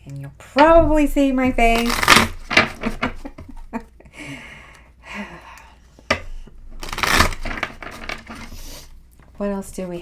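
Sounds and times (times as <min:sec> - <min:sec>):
person breathing: 0:04.1 - 0:06.6.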